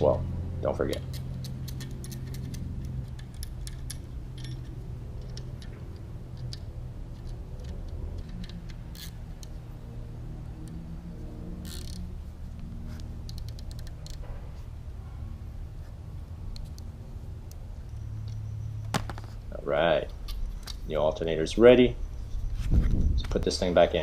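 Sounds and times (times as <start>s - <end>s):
steady low hum: 0.0s - 24.0s
metallic clicks of hand tools: 0.9s - 9.6s
ratchet clicking: 0.9s - 9.6s, 11.6s - 12.1s, 12.9s - 14.3s.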